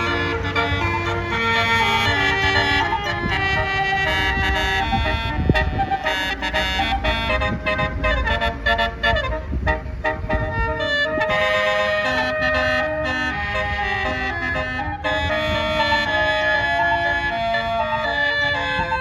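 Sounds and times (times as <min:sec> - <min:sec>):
low rumble: 0:00.0 - 0:11.3
multi-note air horn playing a tune: 0:00.0 - 0:19.0.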